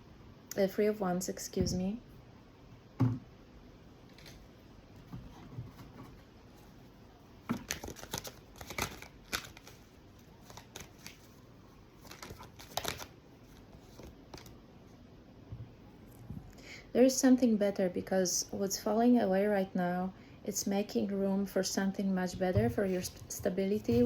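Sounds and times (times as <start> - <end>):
cards snapping and rustling: 7.5 - 11.3, 12.0 - 13.1.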